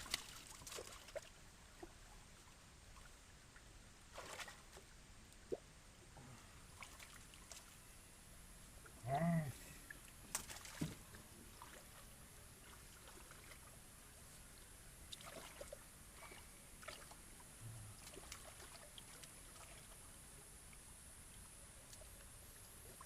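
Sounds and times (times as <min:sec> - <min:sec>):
small splashes: 0:00.0 - 0:04.9, 0:06.7 - 0:07.8, 0:09.8 - 0:14.4, 0:15.1 - 0:17.2, 0:18.0 - 0:20.2
water sloshing and trickling: 0:00.0 - 0:23.0.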